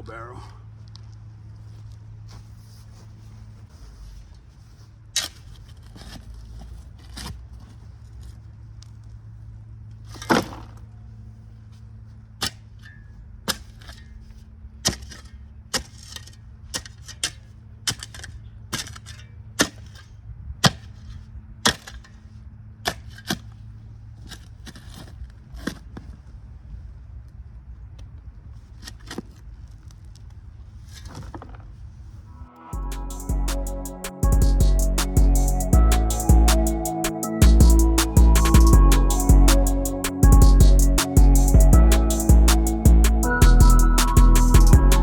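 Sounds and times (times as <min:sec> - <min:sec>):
steady low hum: 0:32.7 - 0:45.0.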